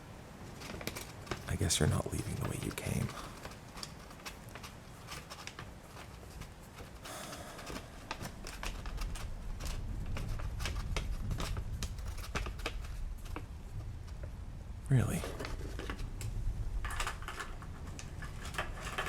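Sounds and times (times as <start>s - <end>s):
low thunder rumble: 7.6s - 15.3s.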